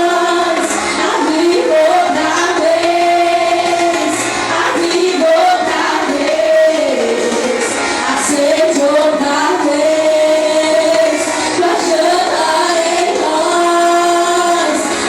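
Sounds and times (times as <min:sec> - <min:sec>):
group singing worship song: 0:00.0 - 0:15.0
instrumental backing: 0:00.0 - 0:15.0.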